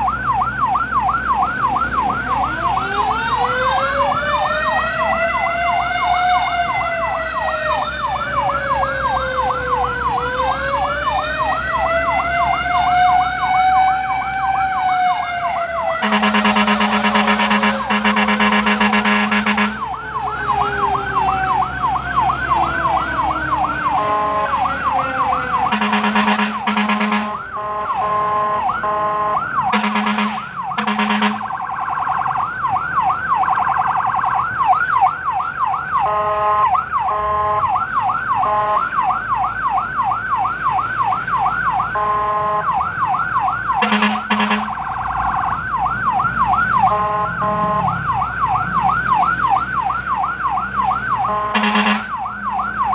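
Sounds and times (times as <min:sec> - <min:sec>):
fire truck siren yelping: 0:00.0 - 0:52.9
short deep horn blasts: 0:16.0 - 0:19.8, 0:25.7 - 0:31.5, 0:43.8 - 0:44.8, 0:51.3 - 0:52.2.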